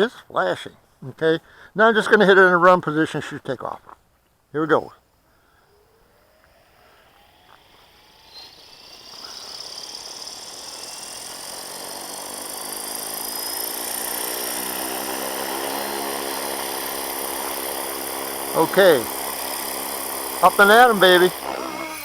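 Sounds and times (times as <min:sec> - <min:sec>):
rc helicopter rotor whine: 0:04.7 - 0:22.0.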